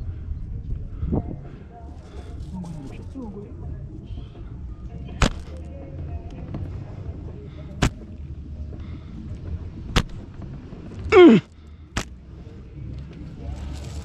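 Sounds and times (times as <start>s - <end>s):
slingshot shots cracking: 5.2s - 5.5s, 7.8s - 8.0s, 10.0s - 10.2s
short cry falling in pitch: 11.1s - 11.4s.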